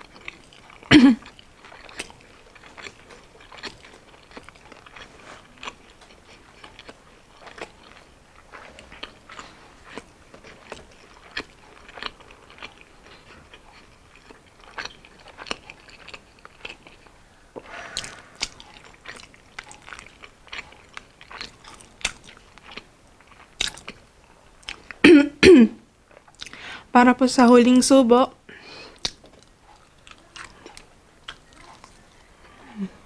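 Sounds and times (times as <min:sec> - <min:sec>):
chewing crunchy food: 0:00.0 - 0:25.0, 0:25.8 - 0:26.8, 0:28.3 - 0:33.0
wet mouth clicks: 0:17.6 - 0:20.2, 0:29.0 - 0:32.0.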